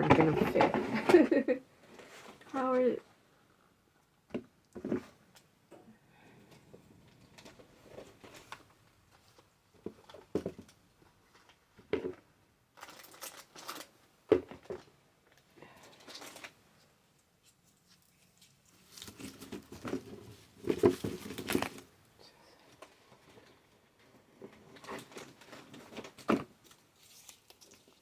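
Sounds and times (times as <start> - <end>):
packaging rustling and crinkling: 12.7 - 22.0, 24.5 - 28.0.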